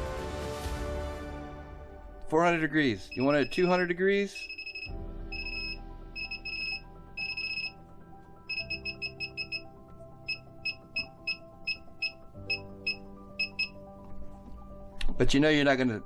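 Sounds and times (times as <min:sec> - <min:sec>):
background music: 0:00.0 - 0:16.0
electronic keypad beeps: 0:03.1 - 0:07.8, 0:08.5 - 0:13.8.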